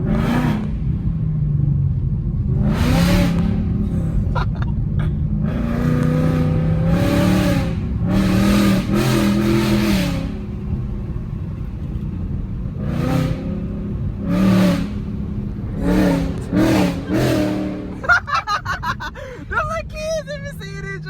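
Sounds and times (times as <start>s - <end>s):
car engine revving hard: 0.0s - 1.2s, 2.4s - 4.6s, 5.3s - 18.6s.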